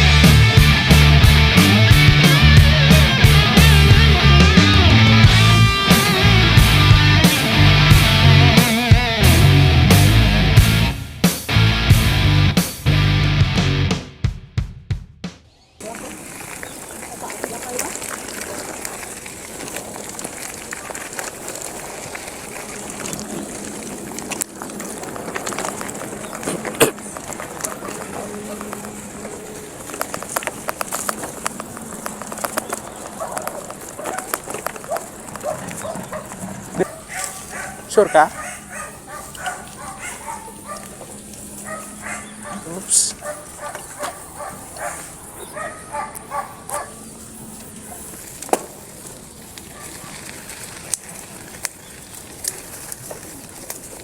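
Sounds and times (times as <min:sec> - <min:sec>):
wind and tyres rushing: 0:15.5 - 0:54.0
bicycle clicks and rattles: 0:15.9 - 0:42.6, 0:43.2 - 0:54.0
dog barking: 0:27.6 - 0:28.2, 0:33.2 - 0:41.0, 0:41.6 - 0:47.0.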